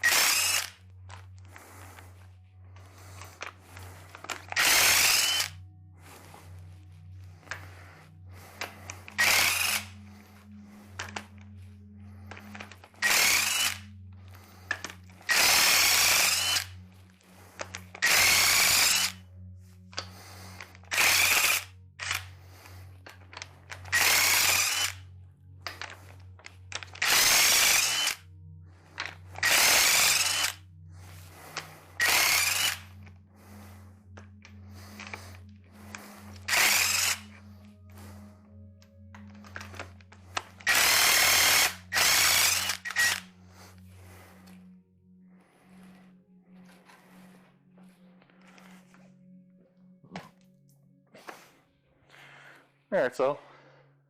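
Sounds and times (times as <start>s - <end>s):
power tool whining: 0.0s - 2.1s, 2.8s - 6.6s, 7.3s - 19.3s, 20.0s - 44.7s.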